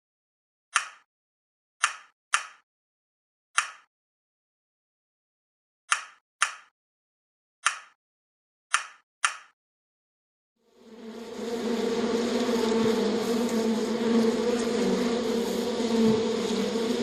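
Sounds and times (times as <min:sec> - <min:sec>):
flying insect buzzing: 0:10.6 - 0:17.0.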